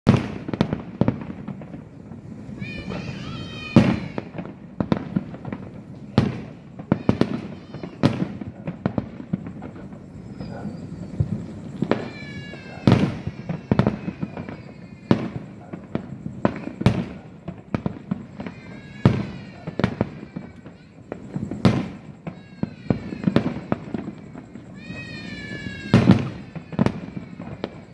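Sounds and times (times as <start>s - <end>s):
fireworks bangs and crackles: 0.1s - 27.9s
fireworks falling whistles: 0.1s - 27.9s.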